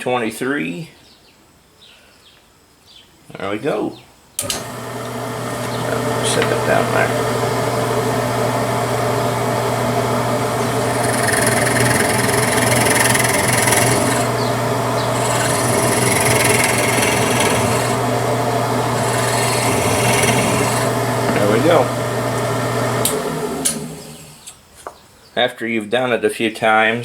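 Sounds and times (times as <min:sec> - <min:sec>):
drill bit cutting into block: 0:04.4 - 0:24.5
drill press motor hum: 0:04.4 - 0:24.6.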